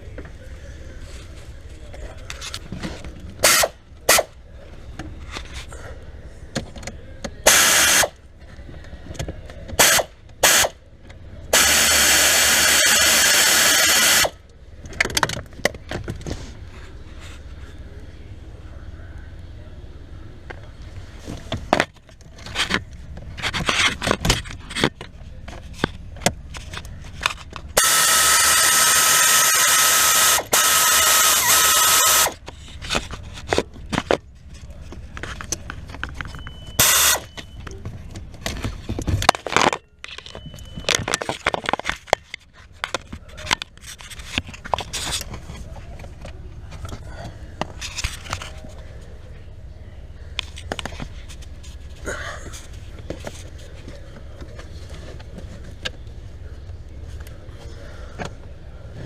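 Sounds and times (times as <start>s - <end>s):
cordless drill running: 7.5s - 8.1s, 11.6s - 14.4s, 27.8s - 32.4s, 36.8s - 37.2s.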